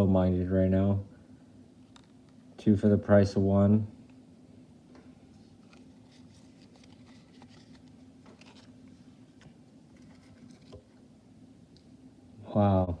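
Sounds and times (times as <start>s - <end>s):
low steady hum: 0.0s - 13.0s
trading cards being shuffled: 5.5s - 11.0s.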